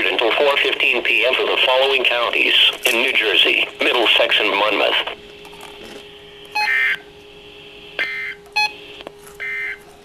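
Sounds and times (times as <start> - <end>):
faint steady hum: 0.0 - 10.0
touch-tone signalling bursts: 6.5 - 7.0.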